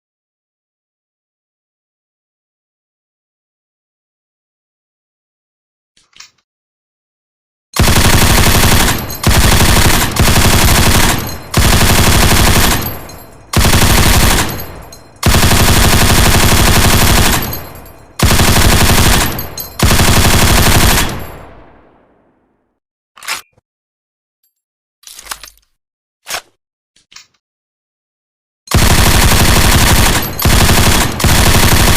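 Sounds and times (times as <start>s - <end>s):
machine gun bursts with echo: 7.8s - 21.8s, 28.7s - 31.9s.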